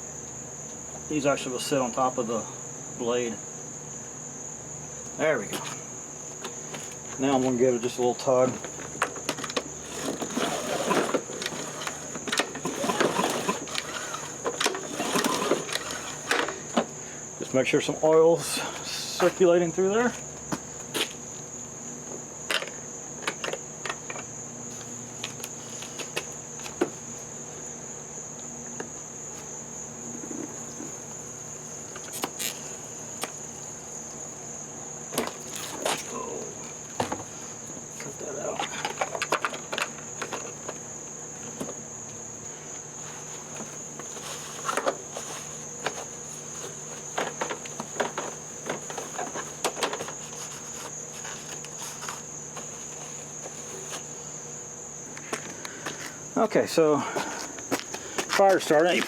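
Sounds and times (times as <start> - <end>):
insects chirping: 0.0 - 59.0
clicks and rattles of handling: 38.0 - 40.8, 43.5 - 52.7.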